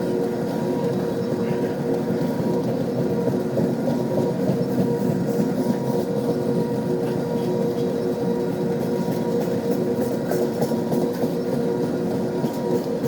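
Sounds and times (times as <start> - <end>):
freight train cars rumbling: 0.0 - 13.0.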